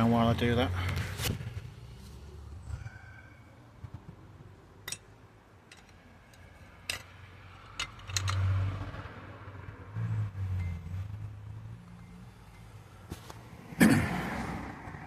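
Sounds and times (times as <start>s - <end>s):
metallic clicks and clinks: 5.7s - 8.5s.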